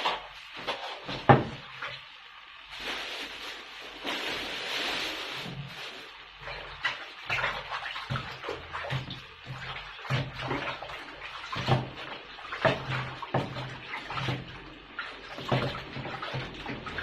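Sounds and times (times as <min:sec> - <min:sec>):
water running in sink: 0:00.0 - 0:17.0.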